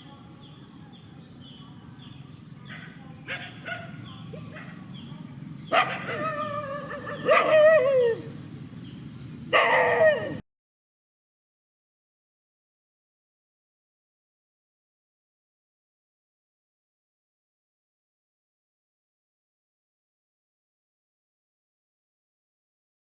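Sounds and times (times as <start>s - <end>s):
dog barking: 2.7s - 4.9s, 5.7s - 8.2s, 9.5s - 10.4s.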